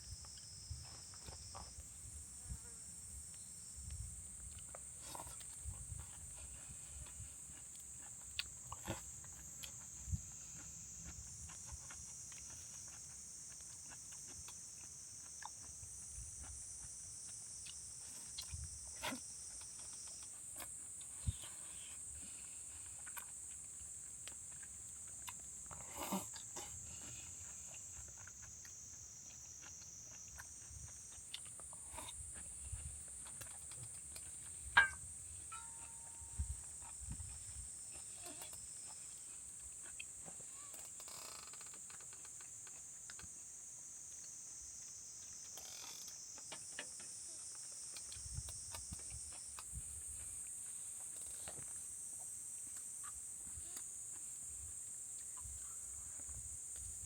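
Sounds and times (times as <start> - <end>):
high-pitched insect chorus: 0.0 - 57.0.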